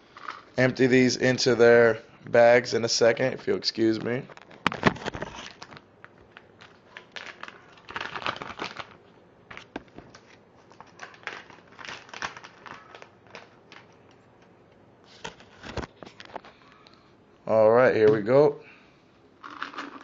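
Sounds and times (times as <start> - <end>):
plastic bags crinkling: 4.3 - 14.0.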